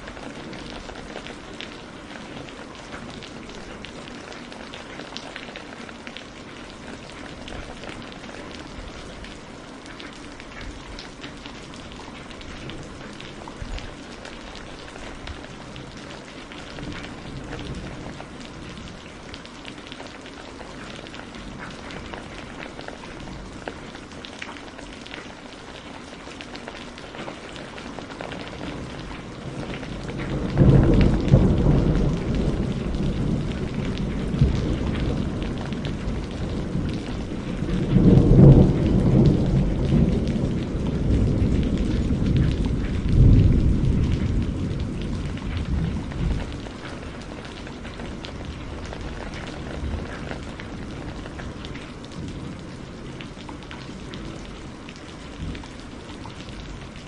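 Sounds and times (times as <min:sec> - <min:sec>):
steady rain: 0:00.0 - 0:57.0
thunder rolling: 0:28.8 - 0:47.3.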